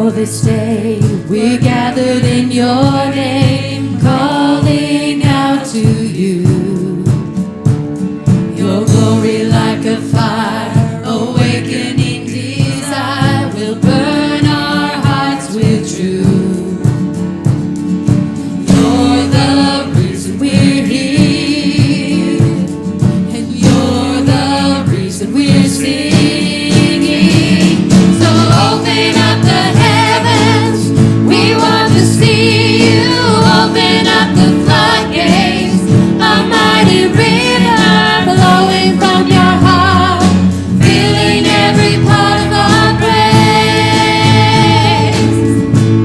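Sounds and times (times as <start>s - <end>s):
voices singing worship song: 0.0s - 7.4s, 8.1s - 46.0s.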